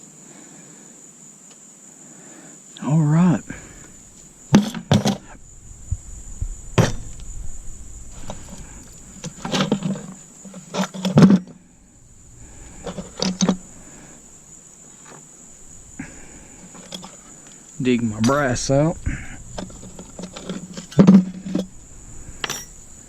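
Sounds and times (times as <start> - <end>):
cricket chirping: 0.0 - 23.0
metal scrap clinking: 3.4 - 5.4, 6.7 - 23.0.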